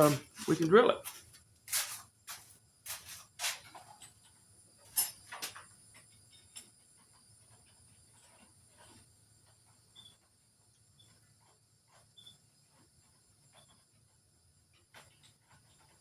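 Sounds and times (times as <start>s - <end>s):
faint scattered ticks: 0.1s - 16.0s.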